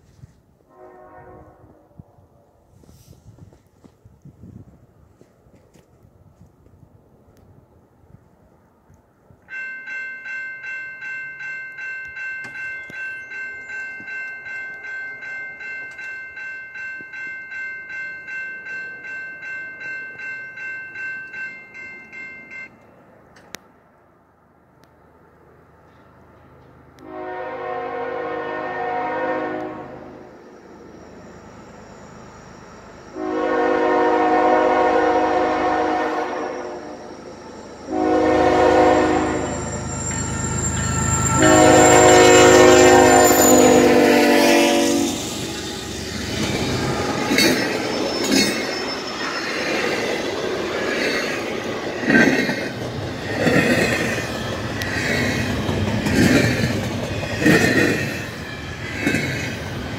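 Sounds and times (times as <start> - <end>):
locomotive air horn blasts: 0.7 - 2.2, 27.0 - 30.3, 33.2 - 37.0, 37.9 - 39.7, 41.2 - 45.3
train wheels clicking over rails: 45.0 - 59.9.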